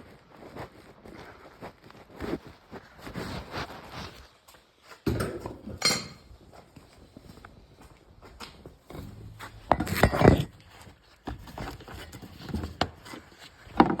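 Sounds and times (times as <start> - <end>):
hard objects clunking: 8.9 - 13.1.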